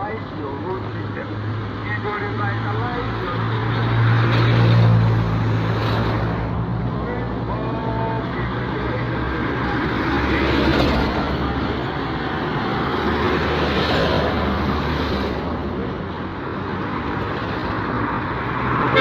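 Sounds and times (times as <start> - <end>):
road traffic passing: 0.0 - 19.0.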